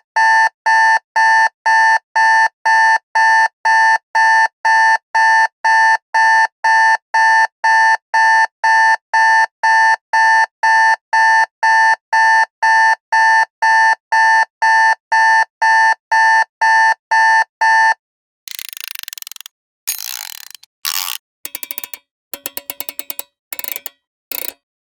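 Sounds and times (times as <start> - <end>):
alarm clock beeping: 21.5 - 24.6.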